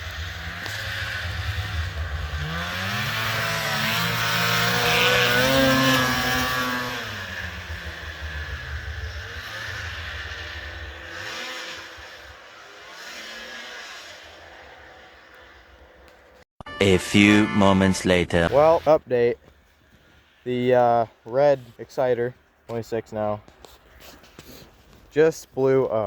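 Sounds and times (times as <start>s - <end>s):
snowmobile engine passing by: 0.0s - 16.4s.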